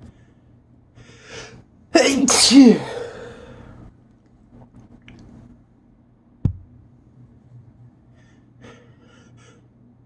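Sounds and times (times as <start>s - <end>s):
person sneezing: 2.0s - 3.5s.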